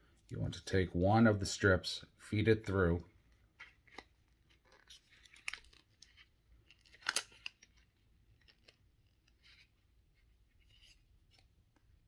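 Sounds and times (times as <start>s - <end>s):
plastic strip rustling and scraping: 3.3s - 11.6s.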